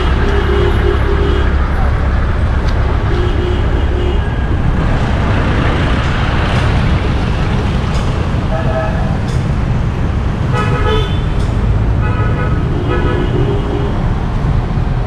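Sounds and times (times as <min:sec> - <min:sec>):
vehicle horn: 0:00.0 - 0:01.6, 0:03.0 - 0:04.5, 0:10.5 - 0:11.3, 0:12.0 - 0:14.0
traffic rumble: 0:00.0 - 0:15.0.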